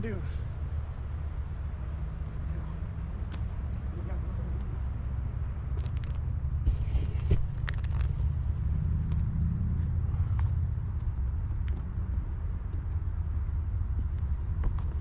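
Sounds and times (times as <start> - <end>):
insects chirping chorus: 0.0 - 15.0
low steady rumble: 0.0 - 15.0.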